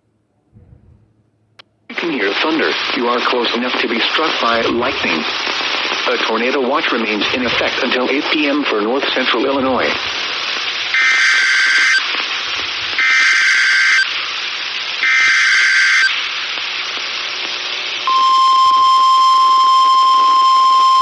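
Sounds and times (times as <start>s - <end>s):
radio hiss: 1.9s - 21.0s
steady warning alarm tone: 10.9s - 12.0s, 13.0s - 14.1s, 15.0s - 16.2s, 18.0s - 21.0s
screeching digital data tones: 10.9s - 12.1s, 13.0s - 14.1s, 15.0s - 16.2s.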